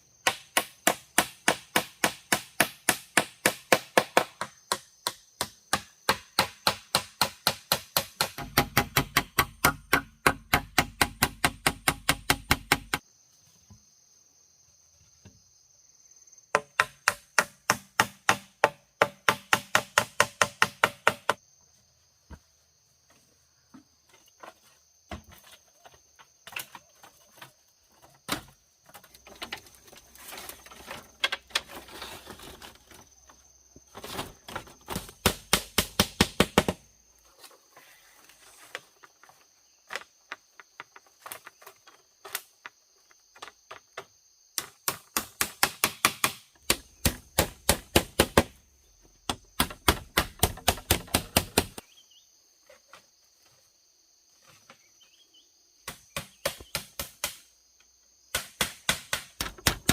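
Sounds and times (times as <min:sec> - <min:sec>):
tool strikes on wood: 0:00.2 - 0:13.0, 0:16.5 - 0:21.4, 0:34.9 - 0:36.8, 0:44.0 - 0:48.6, 0:49.3 - 0:51.8, 0:55.8 - 0:57.4, 0:58.3 - 0:59.9.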